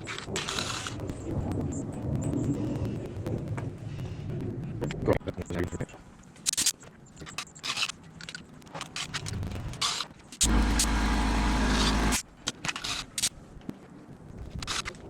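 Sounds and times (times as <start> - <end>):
small motor whirring: 10.4 - 13.1.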